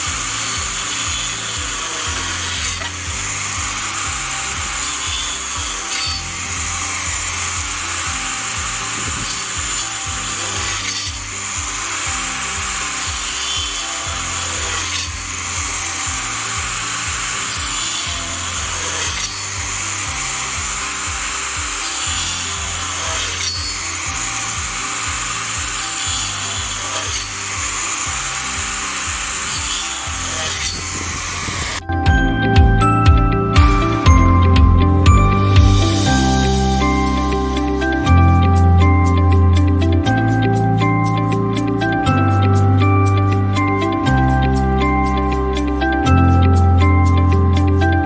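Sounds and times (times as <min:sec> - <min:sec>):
power saw cutting wood: 0:00.0 - 0:31.9.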